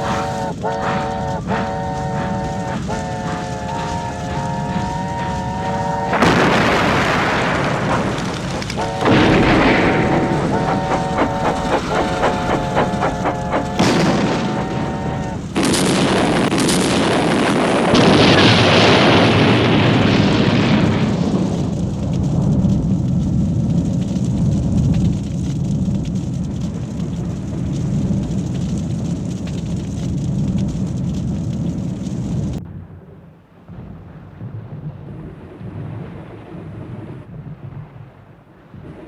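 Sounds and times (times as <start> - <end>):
low rumble: 0.0 - 20.0
explosion blasts: 0.0 - 24.7.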